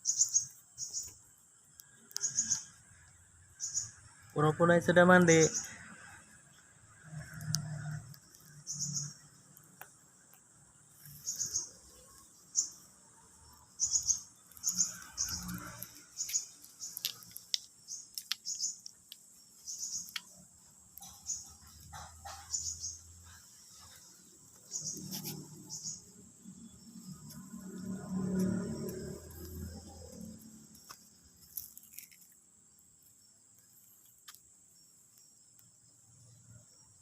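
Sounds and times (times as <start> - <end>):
sharp clicks: 14.0 - 21.9.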